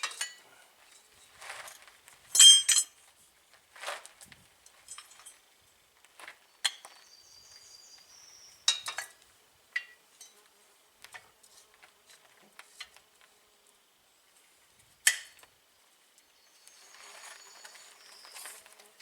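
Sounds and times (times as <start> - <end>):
metal parts and tools clinking: 2.4 - 3.0.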